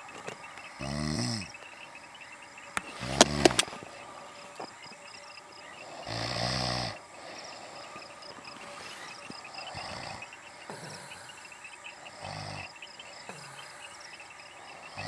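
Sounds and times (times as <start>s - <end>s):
woman snoring: 0.8s - 1.5s, 5.9s - 7.7s, 8.8s - 11.5s, 12.1s - 14.0s
sharp clicks: 2.7s - 3.9s.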